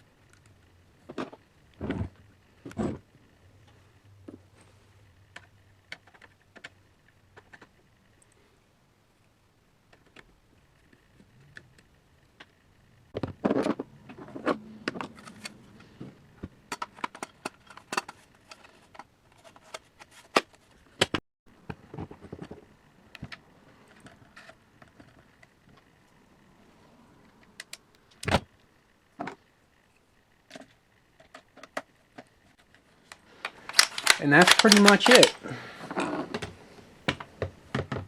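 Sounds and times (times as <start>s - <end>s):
rifle parts clicking and rattling: 13.2s - 21.2s, 30.5s - 38.0s.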